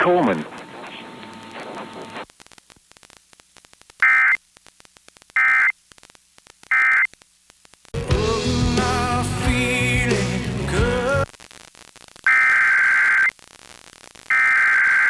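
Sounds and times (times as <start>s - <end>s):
faint static crackles: 0.0s - 8.2s, 9.5s - 15.0s
buzzy digital data bursts: 5.3s - 5.7s, 12.2s - 15.0s
music: 8.0s - 11.2s.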